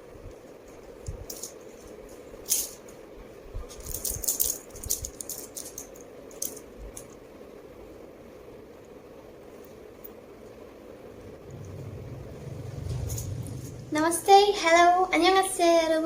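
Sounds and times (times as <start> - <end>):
faint steady hum: 0.0 - 16.0
light rattling and clinking: 0.9 - 3.0, 3.6 - 7.2, 11.5 - 13.9.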